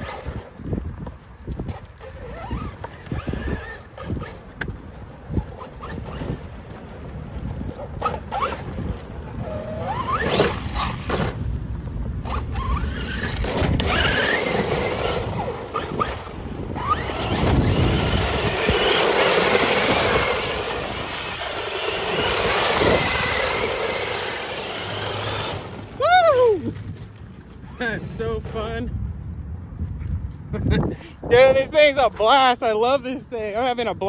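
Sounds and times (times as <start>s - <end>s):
tyres churning loose dirt: 0.0s - 28.9s
electric motor whine: 1.9s - 26.6s.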